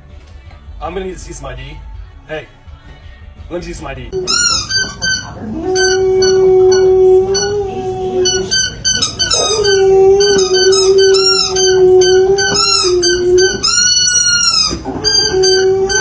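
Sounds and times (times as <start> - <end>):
dog howling: 4.2 - 16.0
dog yips and whines: 4.2 - 16.0.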